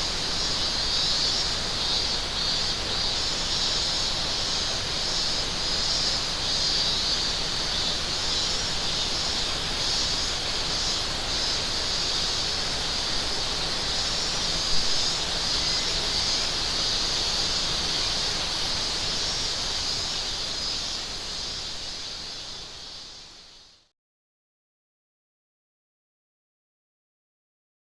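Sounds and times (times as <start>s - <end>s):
cicadas shrilling: 0.0s - 23.9s.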